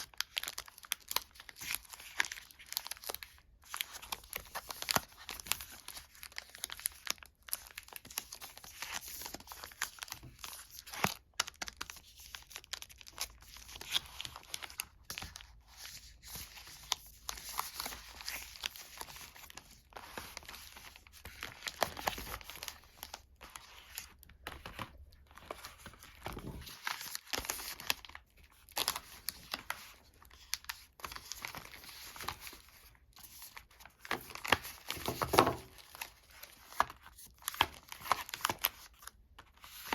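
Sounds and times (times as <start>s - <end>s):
wrappers crinkling and tearing: 0.0s - 39.9s.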